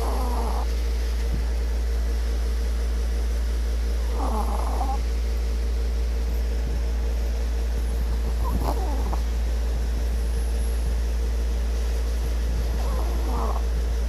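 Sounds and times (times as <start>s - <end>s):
pet snoring: 0.0s - 0.8s, 4.0s - 5.1s, 8.0s - 9.8s, 12.2s - 14.0s
pet whimper: 0.0s - 0.8s, 4.0s - 5.0s, 8.1s - 9.4s, 12.4s - 14.0s
steady low hum: 0.0s - 14.0s.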